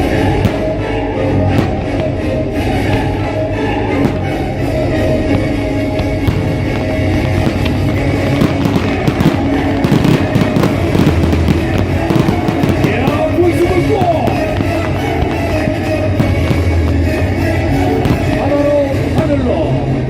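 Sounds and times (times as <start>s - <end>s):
fireworks bursting and crackling: 0.0s - 19.6s
loud music: 0.0s - 20.0s.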